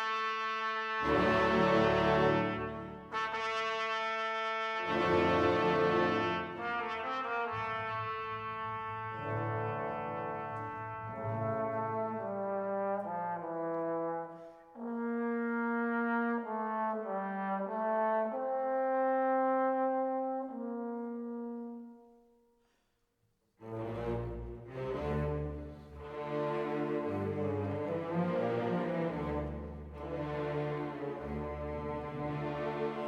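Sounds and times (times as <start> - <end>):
slow brass melody: 0.0 - 22.4.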